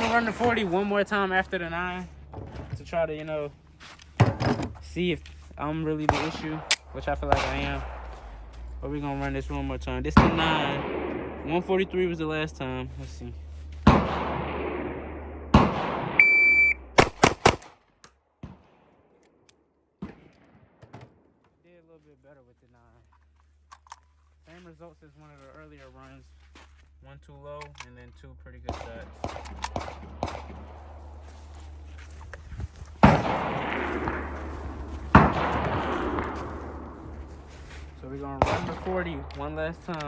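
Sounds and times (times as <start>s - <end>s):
pistol shots: 6.0s - 8.5s, 10.1s - 12.0s, 13.8s - 17.8s, 28.7s - 31.0s, 33.0s - 37.1s, 38.4s - 40.0s
loud echoing bang: 6.0s - 12.8s, 13.8s - 16.2s, 33.0s - 37.5s
shot timer beep: 16.2s - 16.9s.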